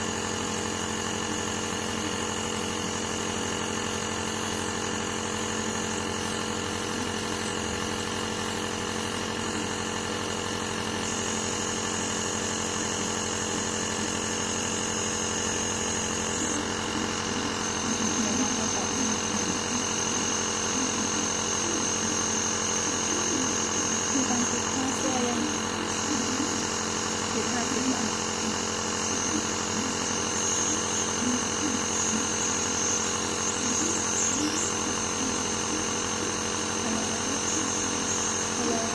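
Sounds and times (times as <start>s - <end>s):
compressor nebulizer humming: 0.0s - 38.9s.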